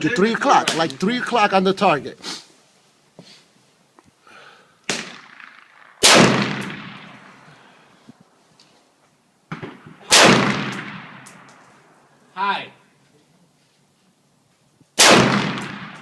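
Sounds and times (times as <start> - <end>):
quieter gunshot: 4.9 - 7.4, 9.5 - 11.6, 15.0 - 16.0
rifle shots echoing: 4.9 - 7.5, 9.5 - 12.0, 15.0 - 16.0.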